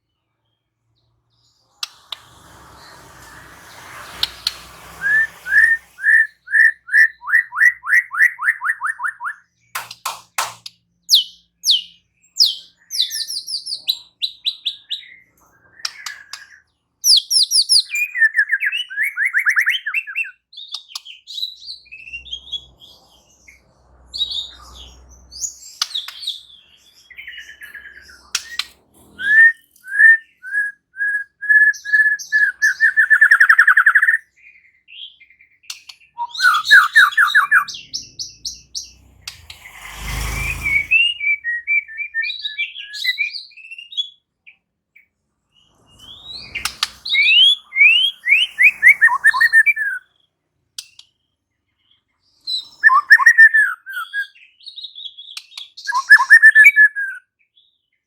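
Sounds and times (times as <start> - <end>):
songbird singing: 24.2 - 44.0, 45.5 - 58.0.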